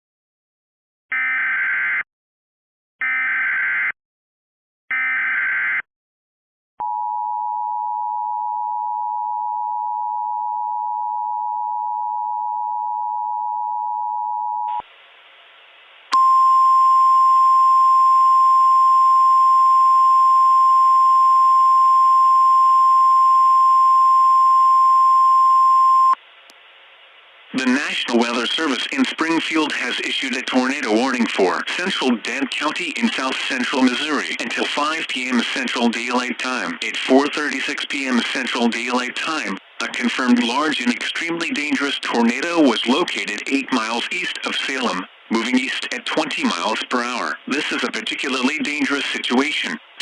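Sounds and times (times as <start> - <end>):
two-tone attention signal: 16.2 - 26.2
radio static: 27.5 - 50.0.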